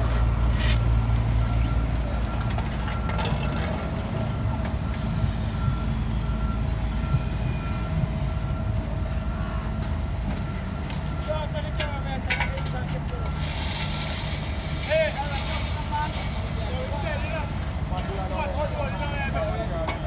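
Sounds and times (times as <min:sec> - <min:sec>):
engine rumbling: 0:00.0 - 0:20.0
reversing alarm beeping: 0:01.0 - 0:09.6.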